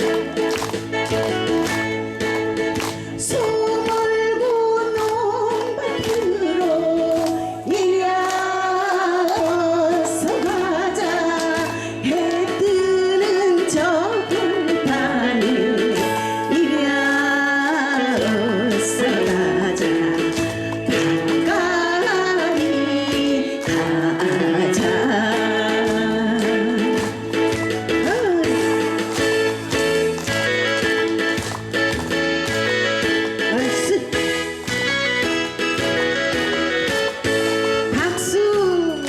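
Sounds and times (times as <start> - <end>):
backing track with beat and bass: 0.0 - 38.9
person singing folk-style song: 3.2 - 29.2, 37.6 - 39.0.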